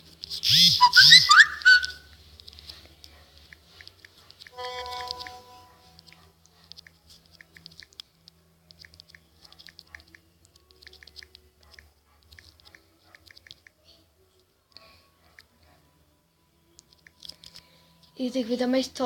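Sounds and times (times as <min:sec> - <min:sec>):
small quick irregular clicks: 0:06.0 - 0:13.8.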